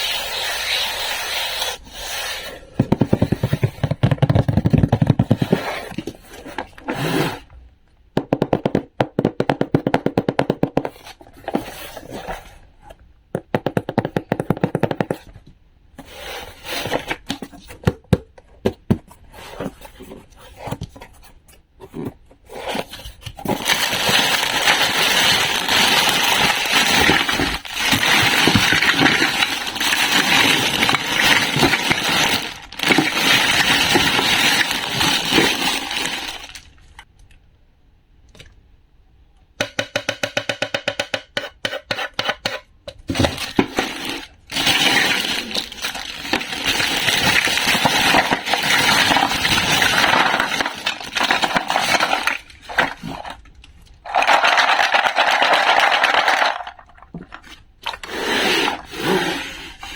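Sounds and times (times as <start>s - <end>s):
scraping crackle: 22.8s - 37.0s, 43.4s - 59.7s.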